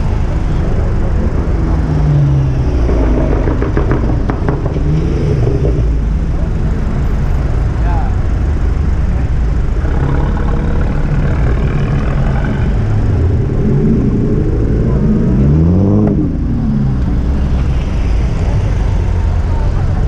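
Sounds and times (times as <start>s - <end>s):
low engine rumble: 0.0s - 20.0s.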